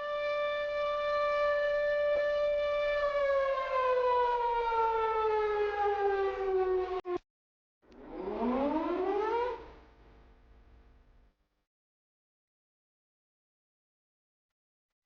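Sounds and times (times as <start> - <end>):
siren winding down: 0.0 - 7.2, 7.9 - 9.8.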